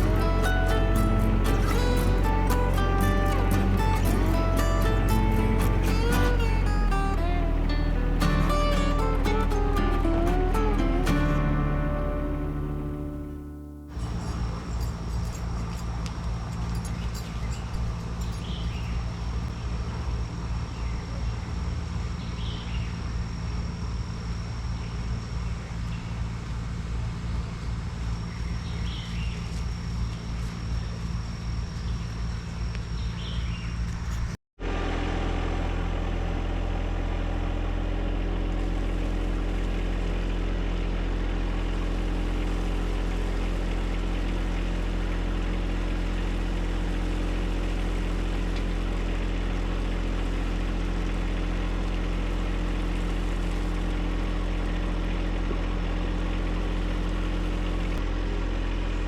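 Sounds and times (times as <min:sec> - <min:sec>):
tractor diesel engine running: 0:00.0 - 0:20.8, 0:33.8 - 0:59.0.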